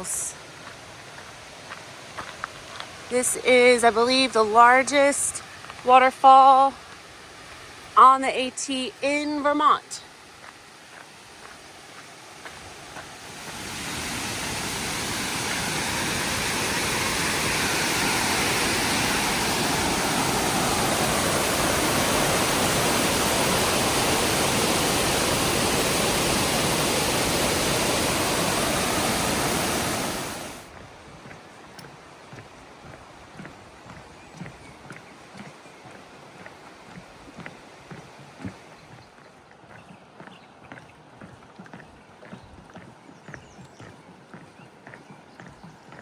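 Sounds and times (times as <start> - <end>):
waterfall roar: 12.5 - 30.7.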